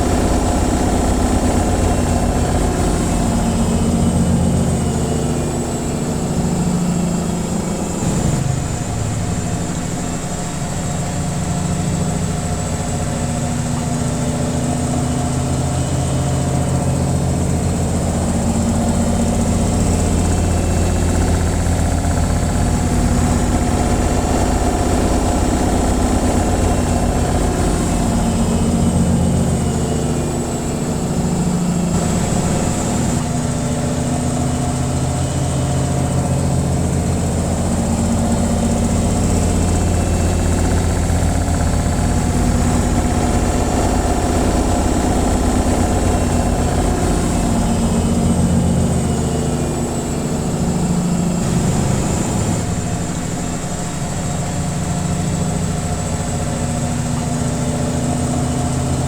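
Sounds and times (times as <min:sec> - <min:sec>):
washing machine spinning: 0:00.0 - 0:59.0.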